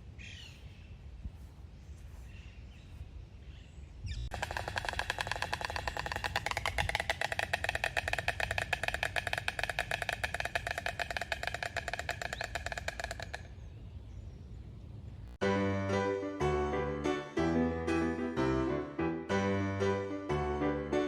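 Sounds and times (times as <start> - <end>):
stork bill clattering: 4.3 - 13.7.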